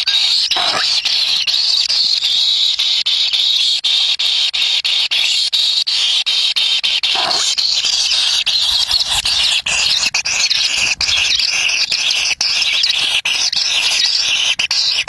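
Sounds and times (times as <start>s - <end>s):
chicks squeaky begging calls: 0.0s - 1.5s, 7.0s - 15.0s.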